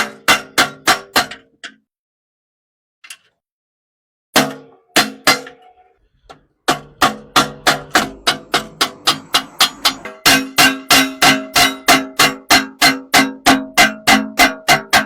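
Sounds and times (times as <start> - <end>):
hammer striking metal pot: 6.7 - 15.0.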